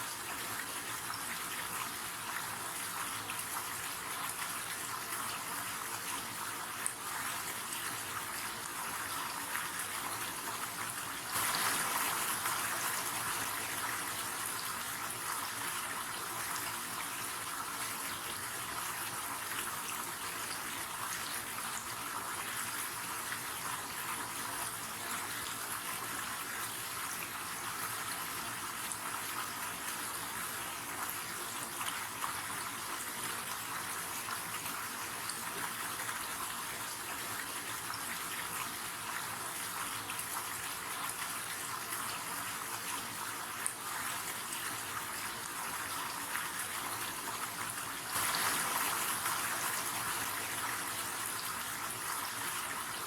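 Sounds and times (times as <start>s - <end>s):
river water flowing: 48.0s - 51.6s.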